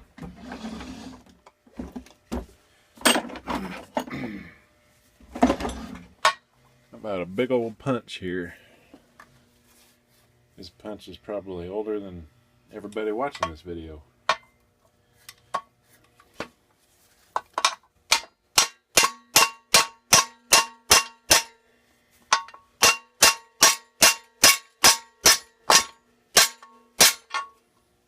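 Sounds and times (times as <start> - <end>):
hammer striking steel punch: 18.1 - 21.6, 22.4 - 27.6.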